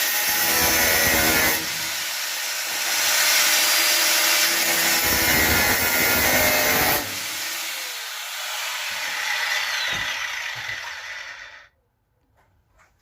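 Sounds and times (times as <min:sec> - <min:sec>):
drill whirring: 0:00.0 - 0:11.7
wire brush drill scraping metal: 0:08.5 - 0:11.7.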